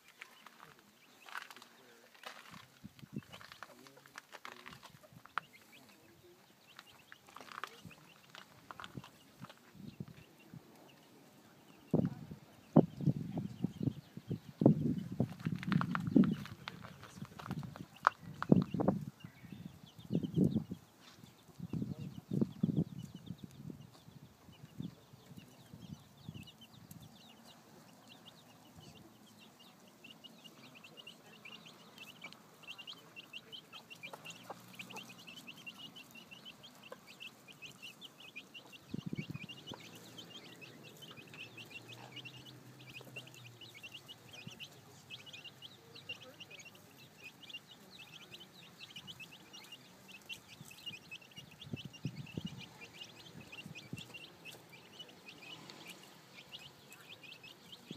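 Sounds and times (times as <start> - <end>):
chicks peeping: 0.0 - 57.9
hen clucking: 21.5 - 57.9.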